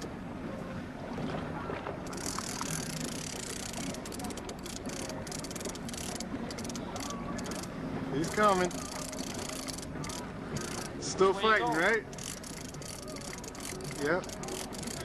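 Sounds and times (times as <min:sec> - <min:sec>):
boat engine running: 0:00.0 - 0:15.0
fishing reel clicking: 0:02.1 - 0:11.0, 0:11.6 - 0:15.0.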